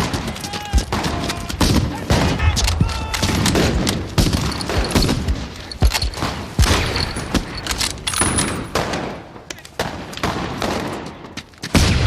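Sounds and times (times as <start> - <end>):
continuous battle din: 0.0 - 12.0
small-arms gunfire barrage: 0.0 - 12.0.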